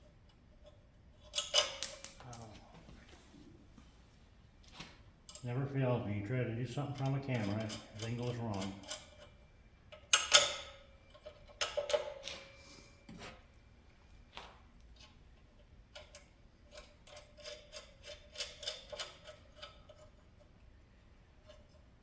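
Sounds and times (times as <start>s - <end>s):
metal parts clinking: 7.0s - 9.3s, 9.9s - 12.2s, 16.0s - 20.1s.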